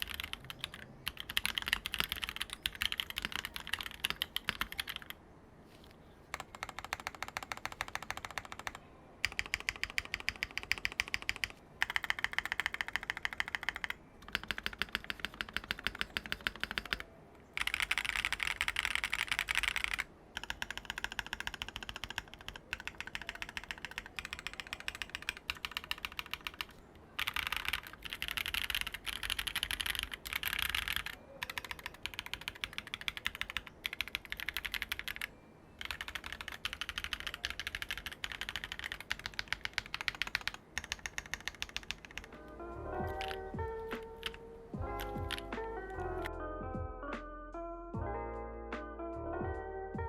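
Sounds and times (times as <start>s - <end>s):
rapid mechanical keyboard typing: 0.0s - 5.2s, 6.3s - 42.4s, 43.1s - 44.4s, 45.0s - 46.3s
background music: 42.3s - 50.0s.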